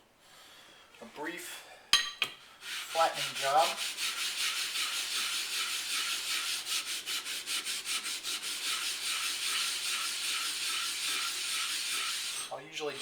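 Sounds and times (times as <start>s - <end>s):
whetstone scrubbing rasp: 2.6s - 13.0s.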